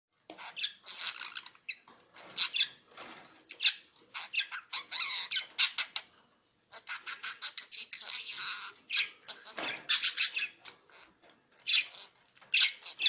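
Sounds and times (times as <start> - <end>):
budgerigar chattering: 6.8 - 10.6.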